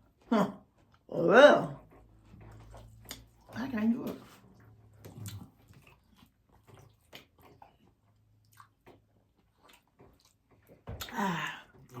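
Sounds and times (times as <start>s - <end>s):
person chewing and crunching: 1.9s - 3.6s, 4.2s - 12.0s.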